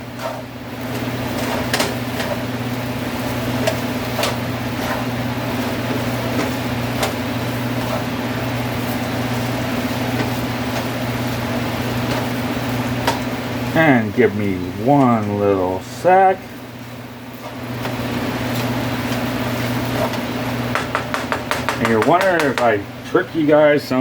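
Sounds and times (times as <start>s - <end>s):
food sizzling in a pan: 0.0s - 13.7s, 16.5s - 20.7s.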